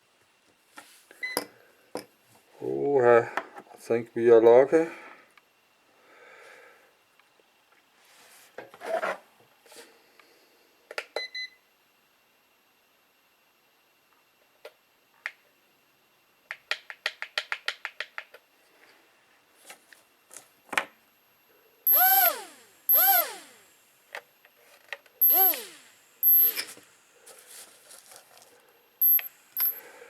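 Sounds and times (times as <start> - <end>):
quadcopter motors whirring: 21.9 - 23.9, 25.2 - 27.1, 29.0 - 30.0
small clicks: 29.0 - 29.8.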